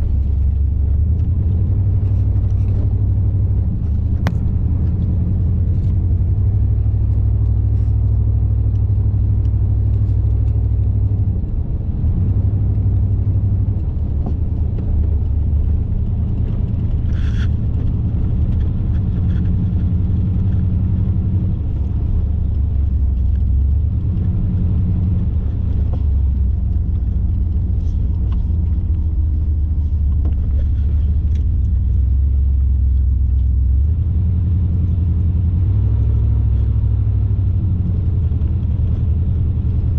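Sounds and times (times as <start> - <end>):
car engine and road rumble: 0.0 - 39.9.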